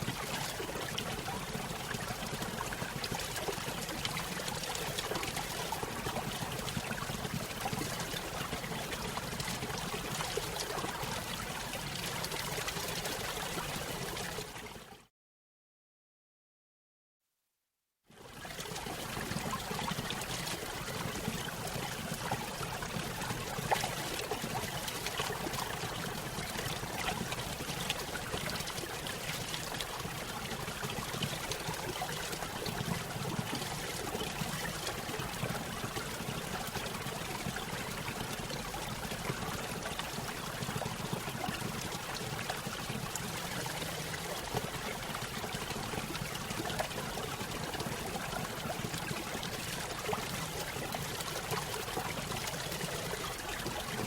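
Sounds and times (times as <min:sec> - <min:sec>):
water trickling and splashing: 0:18.2 - 0:54.0.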